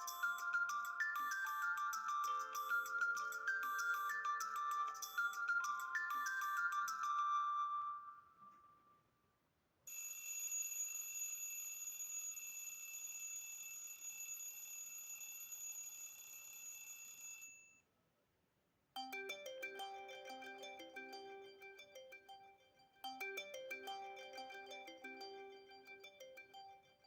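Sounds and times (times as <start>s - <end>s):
melodic phone alarm chime: 0.0s - 8.8s
electronic bell-like ring: 0.0s - 9.0s, 9.9s - 17.8s.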